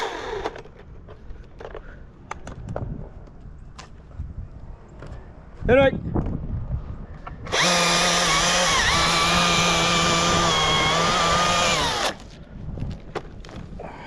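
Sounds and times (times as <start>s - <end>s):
chainsaw engine revving: 0.0s - 0.5s, 7.5s - 12.2s.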